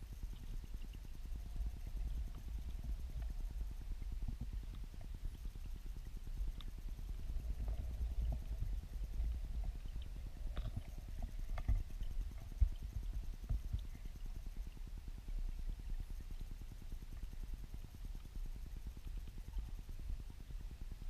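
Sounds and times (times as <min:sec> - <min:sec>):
turbulent water underwater rumble: 0:00.0 - 0:21.0
faint clicks: 0:04.0 - 0:14.8, 0:18.0 - 0:19.9.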